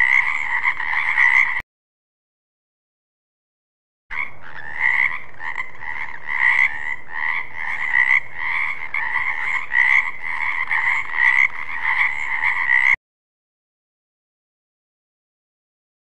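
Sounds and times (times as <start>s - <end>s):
frogs croaking chorus: 0.0s - 1.6s, 4.1s - 13.0s.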